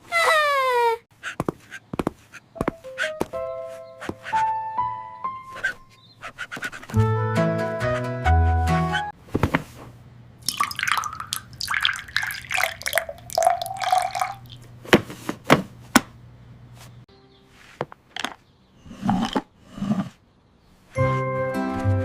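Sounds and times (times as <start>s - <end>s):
sharp drips: 10.4s - 14.7s
wet dripping and lapping: 10.4s - 14.7s.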